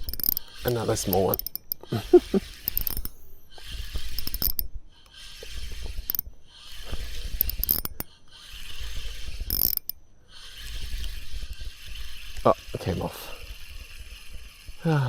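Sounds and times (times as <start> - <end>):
fishing reel whirring and clicking: 0.0 - 15.0.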